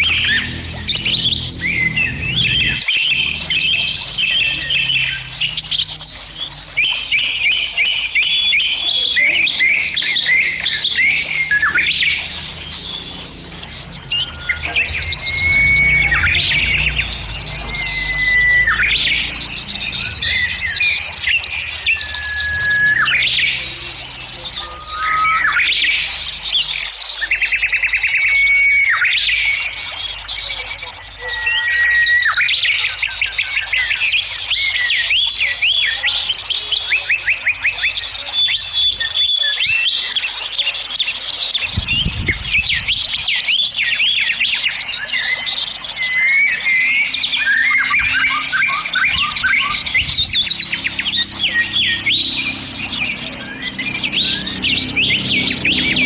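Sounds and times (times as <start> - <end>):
low steady hum: 0.0 - 27.4
small birds chirping: 0.0 - 56.0.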